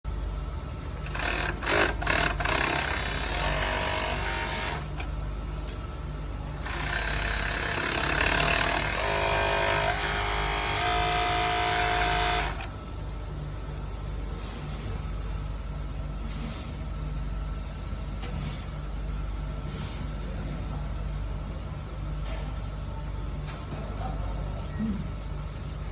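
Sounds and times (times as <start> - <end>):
steady low hum: 0.0 - 25.9
overlock sewing machine stitching: 1.0 - 5.1, 6.6 - 12.7.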